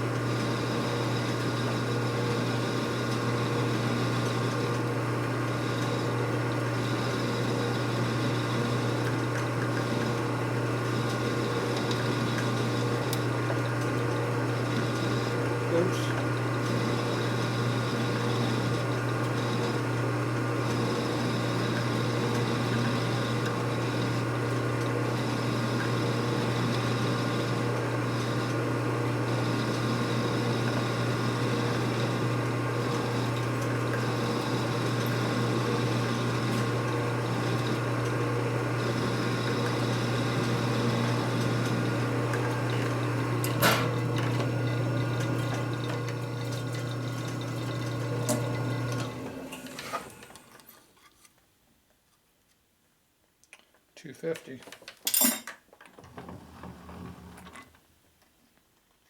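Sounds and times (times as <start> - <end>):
metal lathe humming: 29.2 - 50.3.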